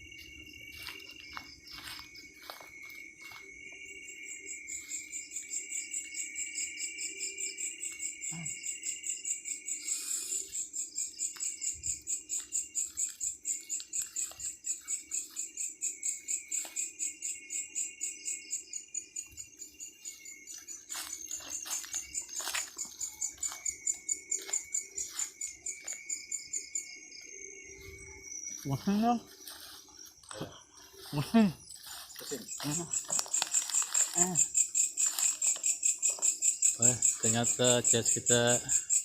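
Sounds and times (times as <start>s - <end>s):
crickets chirping: 0.0s - 39.0s
steady insect drone: 0.0s - 39.0s.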